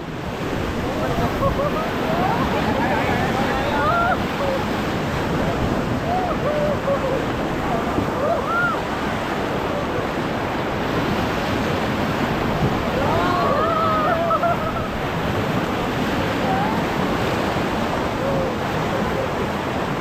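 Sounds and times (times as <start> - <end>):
river water rushing: 0.0 - 20.0
people calling out: 1.1 - 8.9, 12.9 - 14.8.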